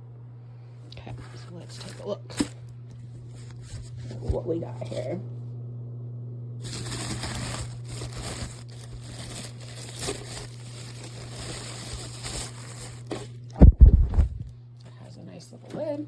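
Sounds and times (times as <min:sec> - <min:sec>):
plastic packaging crinkling: 0:01.6 - 0:02.6, 0:06.6 - 0:13.5
loud dull thumps: 0:13.6 - 0:14.5.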